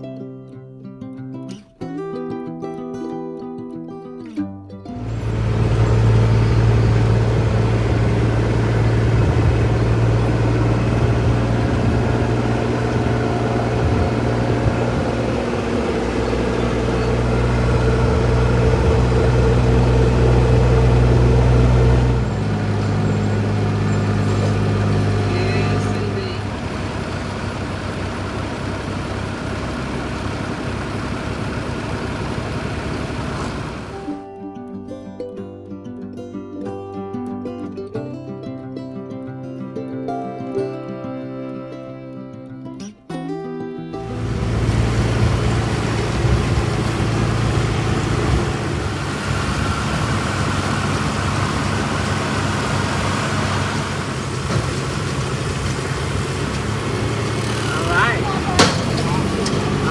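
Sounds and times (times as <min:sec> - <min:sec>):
tractor engine rumbling: 0:04.9 - 0:34.2, 0:44.0 - 0:59.9.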